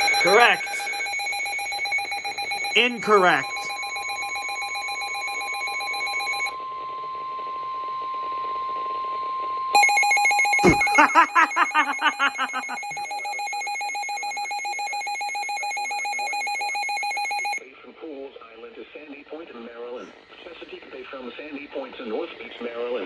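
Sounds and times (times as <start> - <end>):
rapid pulsing electronic ringing: 0.0 - 6.5, 9.8 - 17.6
single-pitched alarm tone: 0.0 - 6.6, 9.8 - 17.6.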